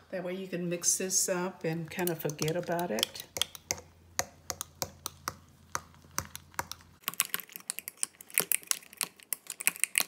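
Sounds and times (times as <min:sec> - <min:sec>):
whisk clicking against container: 0:02.0 - 0:10.0.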